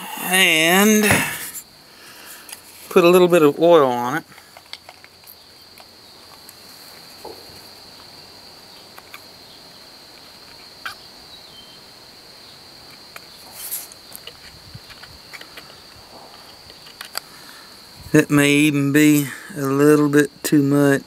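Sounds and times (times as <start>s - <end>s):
high-pitched insect drone: 0.0s - 4.3s.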